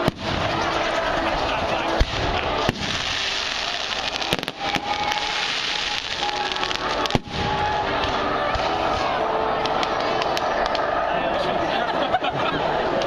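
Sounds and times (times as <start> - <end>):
firework bangs: 0.0 - 10.8
fireworks crackling: 0.0 - 11.0.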